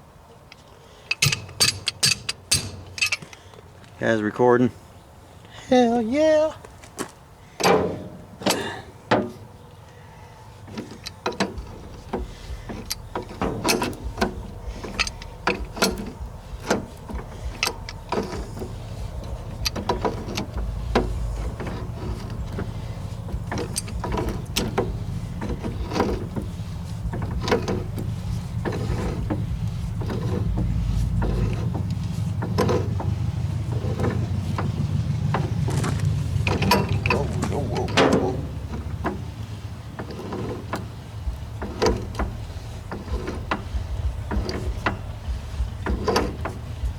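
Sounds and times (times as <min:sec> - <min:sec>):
low steady rumble: 0:00.0 - 0:06.5, 0:07.3 - 0:46.9
metal tools clicking and knocking: 0:00.5 - 0:03.6, 0:10.7 - 0:39.3.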